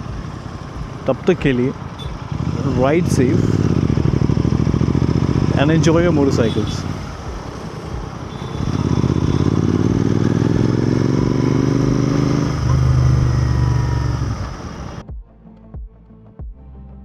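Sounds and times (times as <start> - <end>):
motorcycle engine running: 0.0 - 15.0
faint music with a beat: 15.0 - 17.0.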